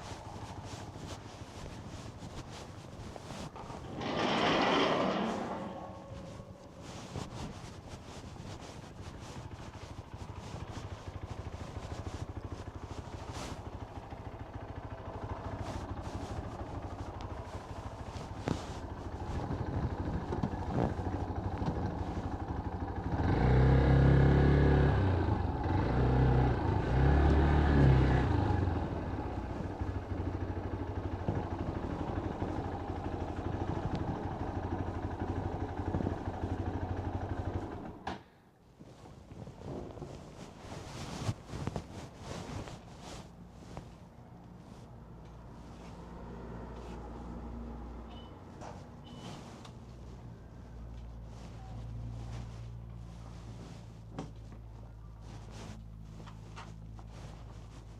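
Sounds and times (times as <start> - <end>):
vehicle engine running: 0.0 - 38.0, 38.9 - 57.9
wind noise on microphone: 19.2 - 22.2.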